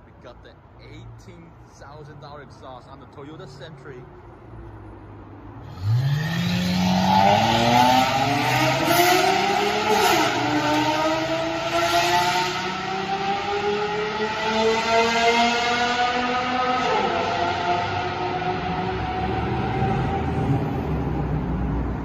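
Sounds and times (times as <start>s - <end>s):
car engine accelerating hard: 5.6s - 22.0s.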